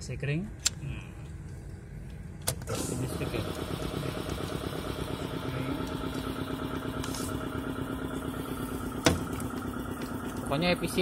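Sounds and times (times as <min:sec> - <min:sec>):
air compressor running: 0:02.2 - 0:11.0.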